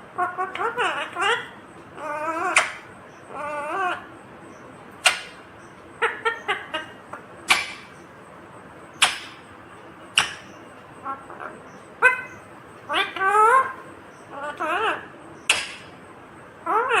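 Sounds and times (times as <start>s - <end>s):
parrot chattering notes: 0.2s - 4.1s, 5.0s - 5.4s, 6.0s - 8.0s, 10.1s - 15.9s
parrot sharp calls: 0.2s - 4.1s, 5.0s - 5.4s, 6.0s - 8.0s, 8.9s - 9.4s, 10.1s - 16.0s.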